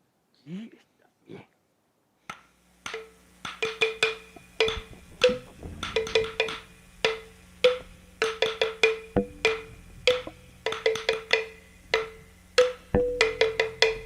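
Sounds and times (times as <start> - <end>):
hollow wooden knocks: 2.9 - 14.0.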